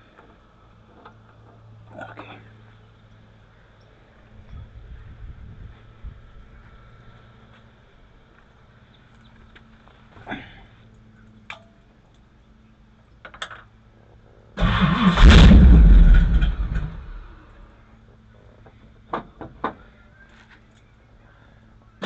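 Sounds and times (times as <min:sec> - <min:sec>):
car engine cranking and running: 0:14.6 - 0:17.7.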